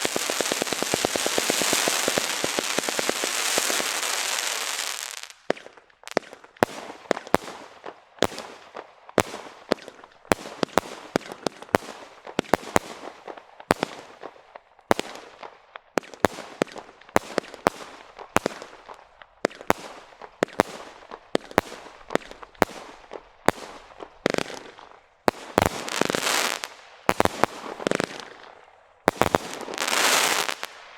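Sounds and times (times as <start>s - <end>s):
dense firework crackling: 0.0s - 14.4s, 15.0s - 30.9s
firework bangs: 0.0s - 14.4s, 15.0s - 30.9s.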